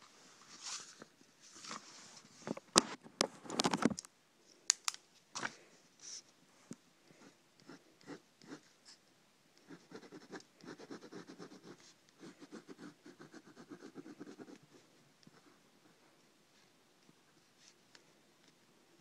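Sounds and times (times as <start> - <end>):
drawing tool scratching on paper: 7.2 - 8.7, 9.6 - 14.7.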